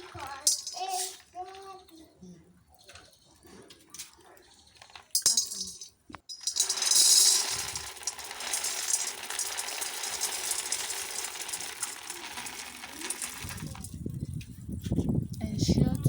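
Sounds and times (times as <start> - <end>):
nuts rattling in a pot: 0.0 - 2.0, 4.7 - 14.2.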